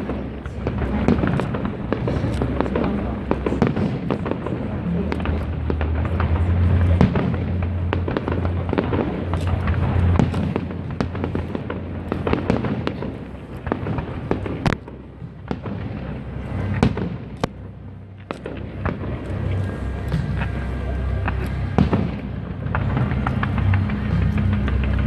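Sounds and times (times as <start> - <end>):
fireworks bursting and crackling: 0.0 - 25.0.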